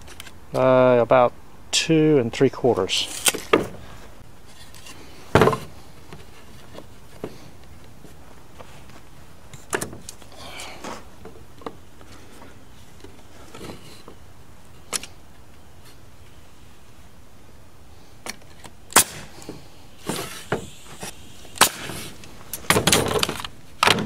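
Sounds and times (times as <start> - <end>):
scraping rustle: 2.9 - 11.2, 19.3 - 23.6.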